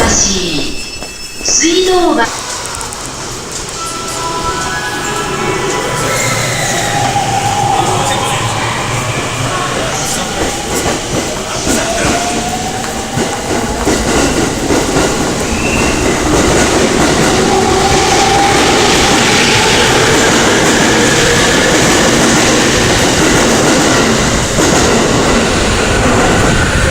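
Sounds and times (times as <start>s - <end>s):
train wheels clattering over track: 9.1s - 26.9s.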